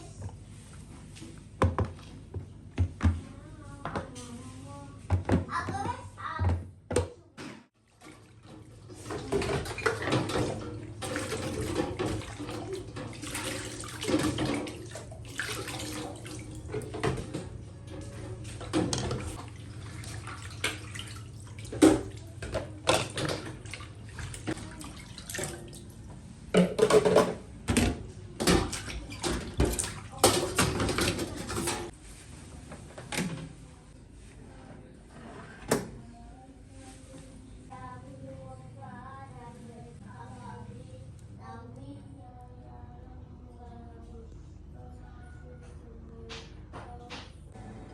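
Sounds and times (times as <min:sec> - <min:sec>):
water running into a sink: 0:08.1 - 0:17.5.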